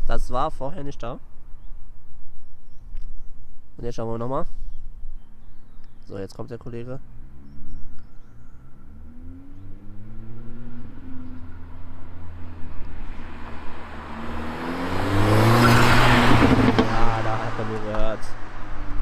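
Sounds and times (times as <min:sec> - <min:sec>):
car accelerating past: 0:08.5 - 0:19.0.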